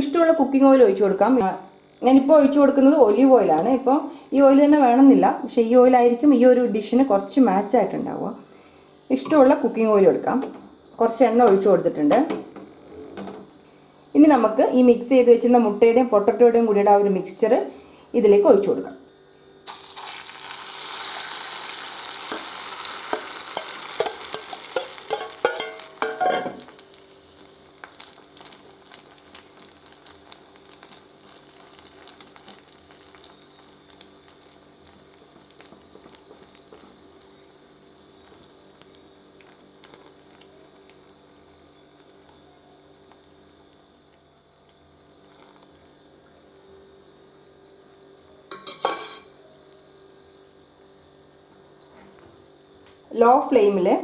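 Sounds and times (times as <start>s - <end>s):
batter sizzling in hot oil: 19.6s - 51.9s
spoon clinking and scraping: 23.1s - 26.6s.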